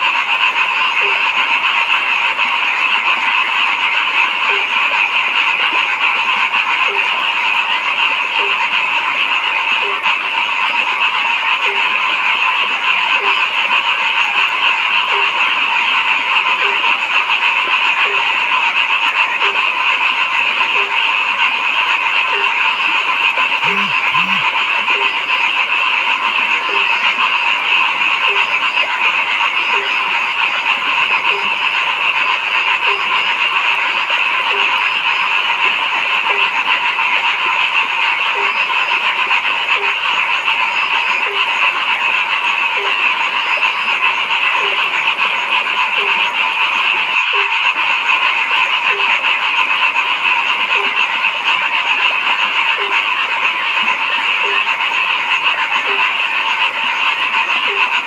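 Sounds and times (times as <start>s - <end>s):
chorus of frogs calling: 0.0s - 58.0s
low-pitched frog croaking: 23.6s - 24.5s.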